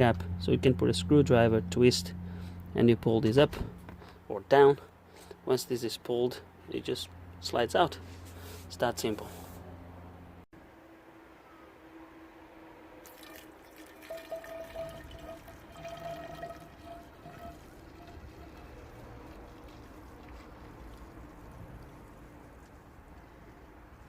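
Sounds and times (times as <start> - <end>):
liquid and handling sounds: 13.0 - 24.0
thin steady tone: 13.1 - 19.1.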